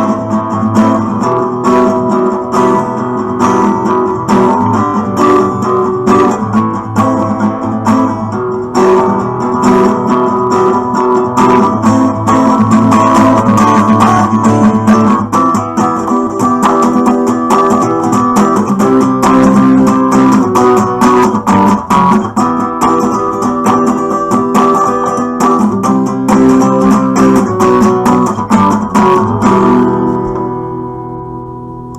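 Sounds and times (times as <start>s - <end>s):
acoustic guitar strumming: 0.0s - 31.9s.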